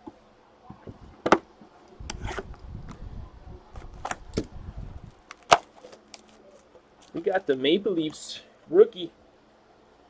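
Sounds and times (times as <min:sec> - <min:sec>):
cards rustling and bumping: 0:03.8 - 0:04.4, 0:05.3 - 0:07.4.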